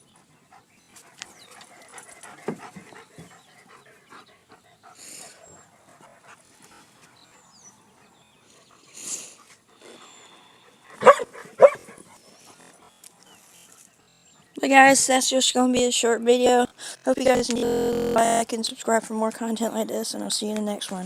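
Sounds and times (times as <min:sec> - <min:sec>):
dogs panting: 0:00.0 - 0:14.9
short bursts of noise: 0:17.3 - 0:18.4.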